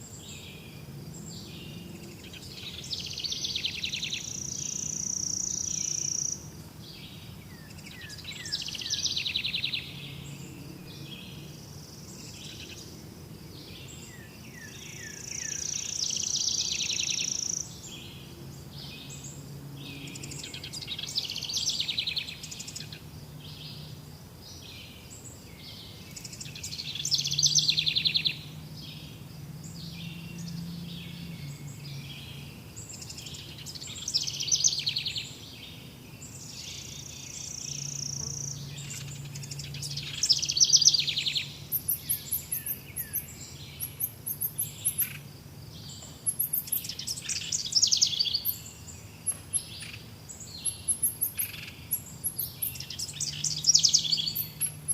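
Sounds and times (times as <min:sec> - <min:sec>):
songbirds singing: 0:00.0 - 0:54.9.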